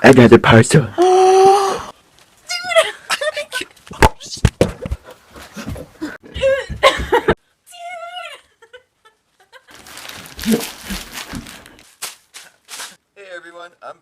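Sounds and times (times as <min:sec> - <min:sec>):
person laughing and talking: 0:02.6 - 0:03.7
noisy shuffling: 0:09.7 - 0:13.0.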